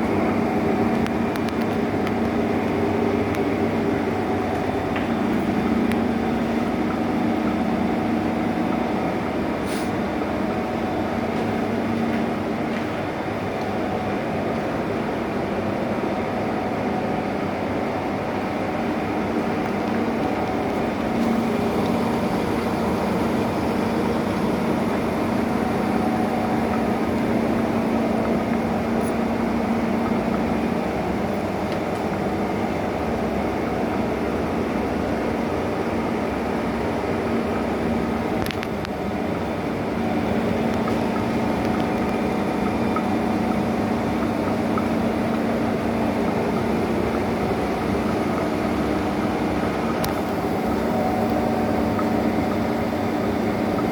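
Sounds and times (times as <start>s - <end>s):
lathe running: 18.9s - 34.6s, 36.6s - 53.9s.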